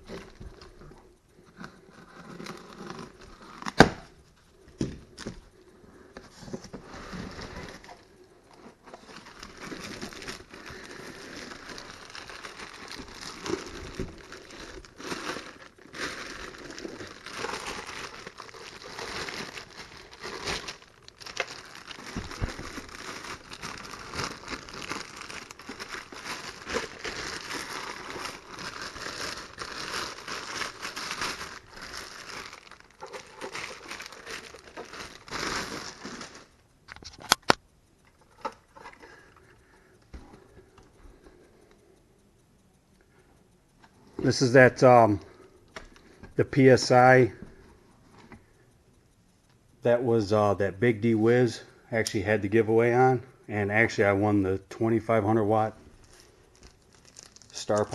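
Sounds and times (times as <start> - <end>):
bubble wrap crinkling: 0.0 - 4.4, 6.8 - 39.3, 55.1 - 57.9
plastic tearing: 8.9 - 37.6, 56.0 - 57.9.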